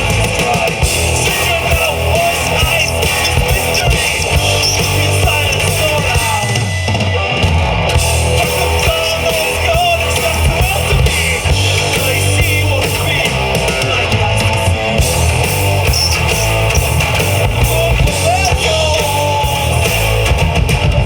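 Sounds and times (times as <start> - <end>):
bass guitar: 0.0 - 21.0
distorted electric guitars: 0.0 - 21.0
drum kit: 0.0 - 21.0
person singing: 17.6 - 20.3.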